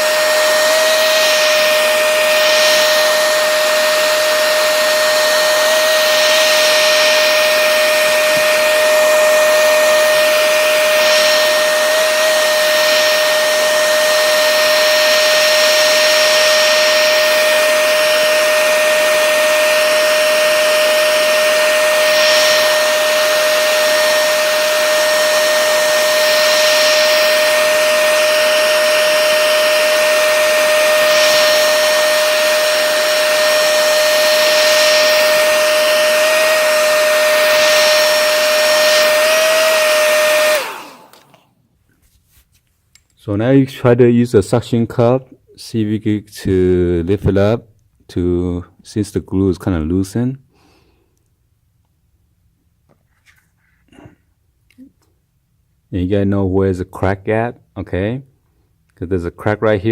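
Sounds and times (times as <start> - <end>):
hair dryer running: 0.0 - 41.6.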